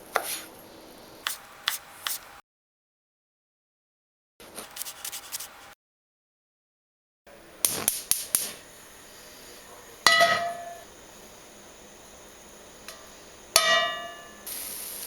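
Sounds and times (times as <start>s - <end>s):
cookware and utensils clinking: 9.7s - 10.9s, 12.9s - 14.5s
ringing metallic clang: 10.0s - 10.9s, 13.6s - 14.4s.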